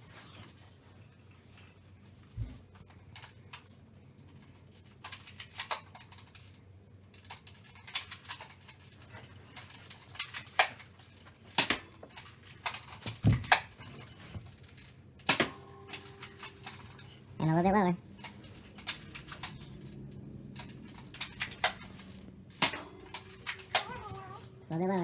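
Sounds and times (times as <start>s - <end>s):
plastic clicks and rattles: 4.4s - 17.3s, 18.1s - 24.5s
short high squeaks: 22.8s - 24.6s.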